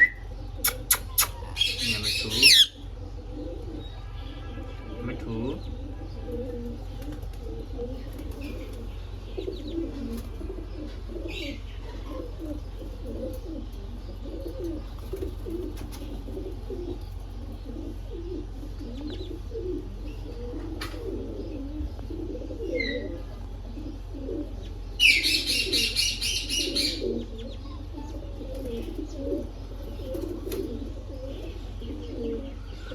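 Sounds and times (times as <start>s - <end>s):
harsh parrot call: 0.0s - 2.8s, 25.0s - 27.3s
birds cooing: 0.0s - 32.9s.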